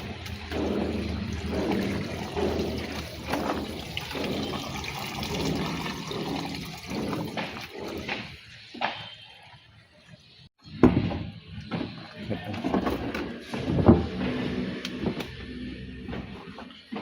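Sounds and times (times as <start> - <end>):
mud rushing into truck bed: 0.0 - 8.4
diesel engine under load: 0.0 - 8.6, 12.2 - 17.0.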